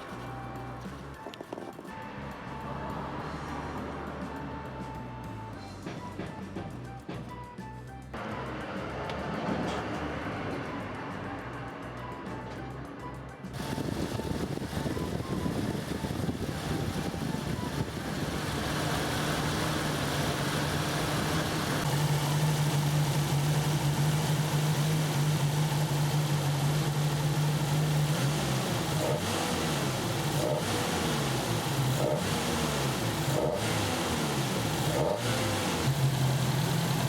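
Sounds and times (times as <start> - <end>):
car engine revving: 8.2 - 37.0.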